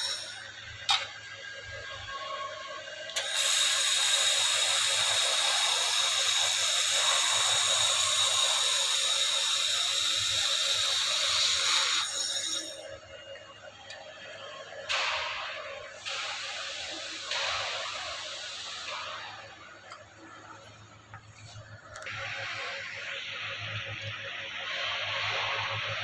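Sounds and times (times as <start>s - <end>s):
laser welder crackling hiss: 0.0s - 0.4s, 3.2s - 12.8s.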